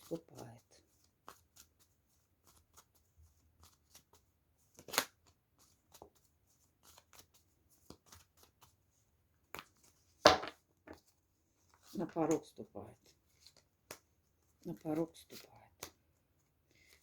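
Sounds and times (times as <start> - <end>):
cards sliding and tapping: 3.6 - 6.2.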